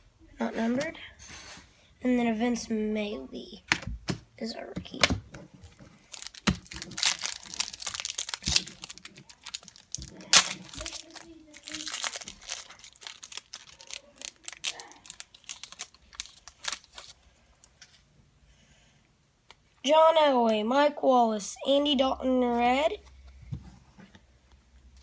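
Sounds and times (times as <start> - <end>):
cards crackling and clicking: 5.8 - 17.8
wrapper crinkling and tearing: 5.9 - 17.2.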